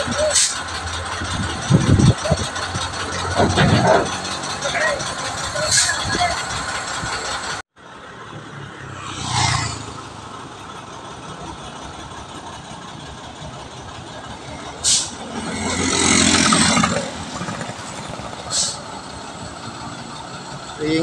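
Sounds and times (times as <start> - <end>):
air brakes hissing: 0.0 - 7.6, 14.4 - 17.0, 18.2 - 19.7
heavy truck idling: 0.0 - 8.9, 9.7 - 21.0.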